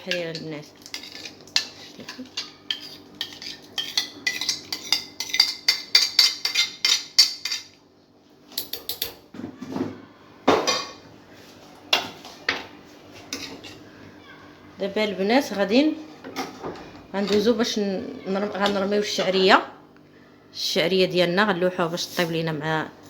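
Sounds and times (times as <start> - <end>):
spoon clinking against pot: 0.0 - 7.7, 8.6 - 9.2
kitchen utensils clattering: 0.0 - 7.8, 16.2 - 19.6.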